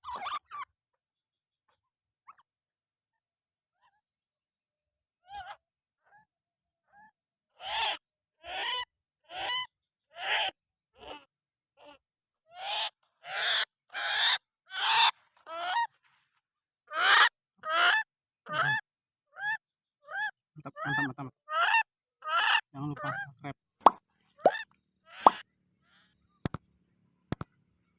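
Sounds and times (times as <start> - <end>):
waterhen croaking calls: 23.9 - 25.4.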